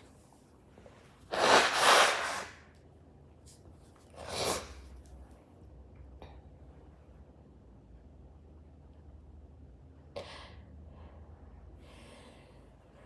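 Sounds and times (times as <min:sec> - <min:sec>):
person blowing nose: 0:01.3 - 0:02.6, 0:04.2 - 0:04.8.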